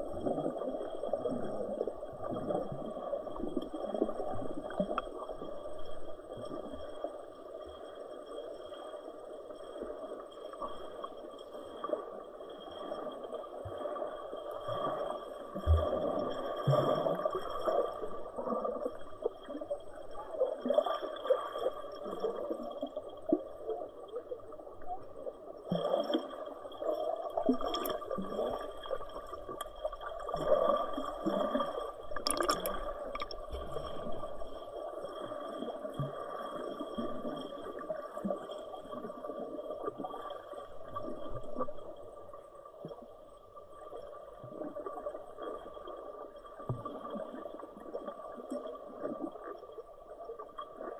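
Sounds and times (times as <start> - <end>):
water gurgling and churning: 25.7 - 38.2
water splashing: 30.3 - 34.2.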